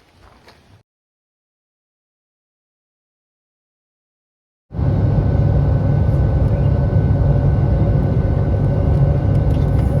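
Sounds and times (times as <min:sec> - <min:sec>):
jet engine cabin drone: 0:04.7 - 0:10.0
faint steady whine: 0:04.8 - 0:10.0.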